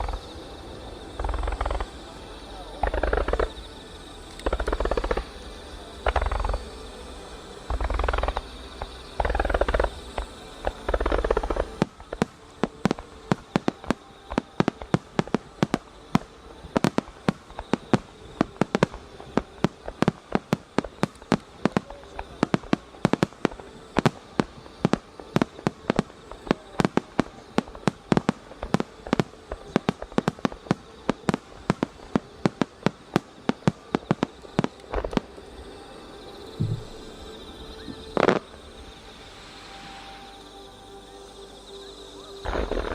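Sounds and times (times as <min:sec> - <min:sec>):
crackling firework pops: 0:01.2 - 0:02.0, 0:04.3 - 0:05.4, 0:06.0 - 0:06.7, 0:07.7 - 0:35.3, 0:37.9 - 0:38.6, 0:42.5 - 0:42.9.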